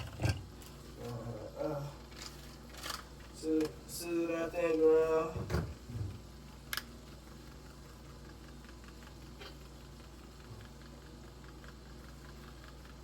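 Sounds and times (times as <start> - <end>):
sauce simmering with small pops: 6.1 - 13.0.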